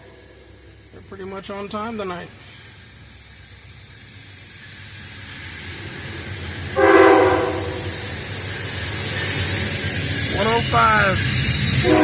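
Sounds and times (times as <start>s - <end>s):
diesel locomotive rumble: 0.0s - 12.0s
locomotive air horn blast: 6.8s - 8.0s.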